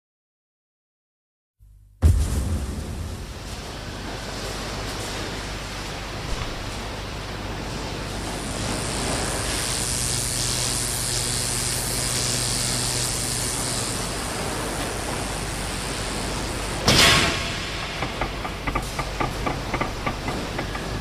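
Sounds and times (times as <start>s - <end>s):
broad hiss: 6.8s - 21.0s.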